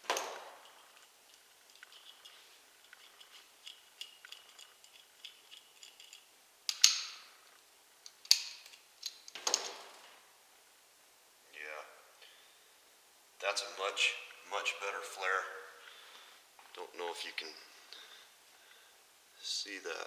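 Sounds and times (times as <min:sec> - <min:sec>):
light metallic clicking: 0:00.1 - 0:09.7.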